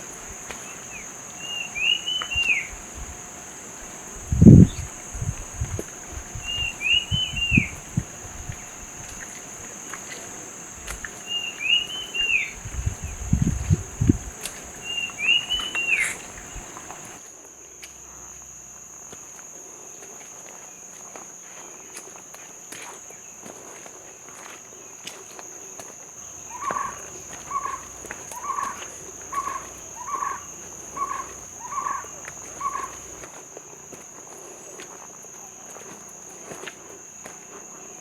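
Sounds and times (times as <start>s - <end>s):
bird chirping: 0.0s - 17.2s
high insect drone: 0.0s - 17.2s, 25.6s - 38.0s
stream flowing: 0.0s - 17.2s.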